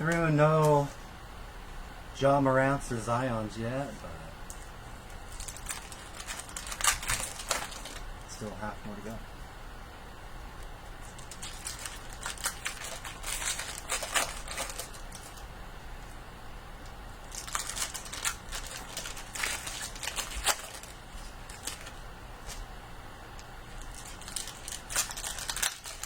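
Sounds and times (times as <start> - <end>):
plastic wrappers crinkling and tearing: 5.3 - 8.4, 11.0 - 16.2, 17.2 - 22.6, 23.7 - 26.0.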